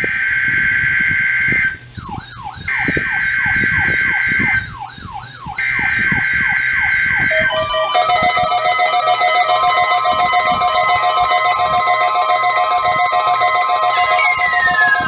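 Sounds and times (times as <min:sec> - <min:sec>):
electronic alarm melody: 0:00.1 - 0:15.0
falling siren-like whoop: 0:00.4 - 0:04.7, 0:05.6 - 0:08.0, 0:10.2 - 0:15.0
steady high beep: 0:07.3 - 0:15.0.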